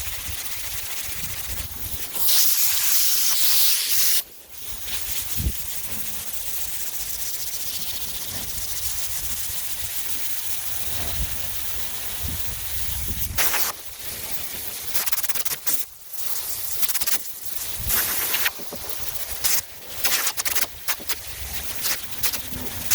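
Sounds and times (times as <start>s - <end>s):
compressed air hiss: 0.0s - 22.9s
sandpaper rasping by hand: 17.8s - 22.9s.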